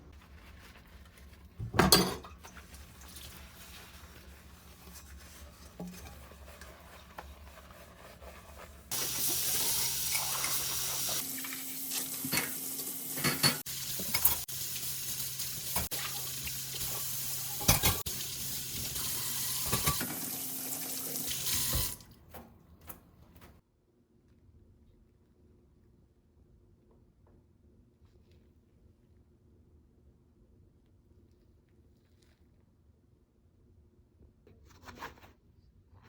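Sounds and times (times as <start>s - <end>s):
tap water running into sink: 8.9s - 22.0s.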